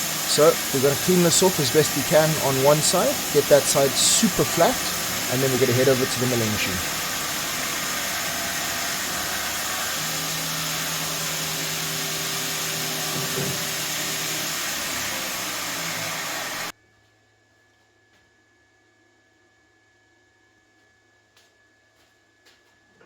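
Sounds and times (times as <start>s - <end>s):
grinding machine grinding steel: 0.0s - 16.7s.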